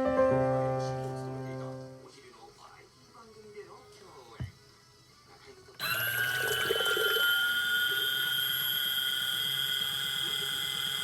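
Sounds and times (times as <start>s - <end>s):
washing machine motor humming: 5.8s - 11.0s.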